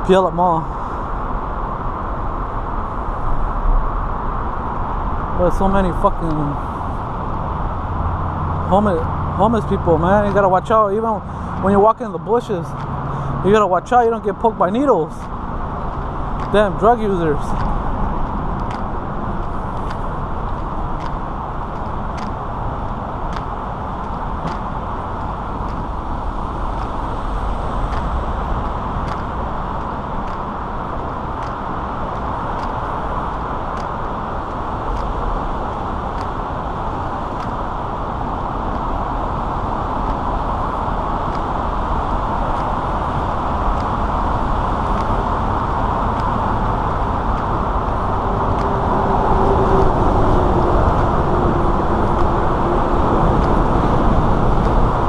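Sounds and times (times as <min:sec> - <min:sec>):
road traffic rumble: 0:00.0 - 0:55.0.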